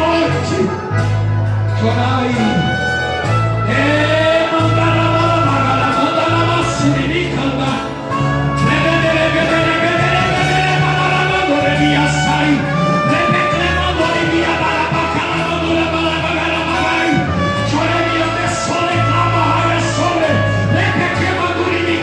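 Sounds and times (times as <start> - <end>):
band playing: 0.0 - 22.0
bass line: 0.0 - 22.0
keyboard chords: 0.0 - 22.0
voices singing: 0.0 - 22.0.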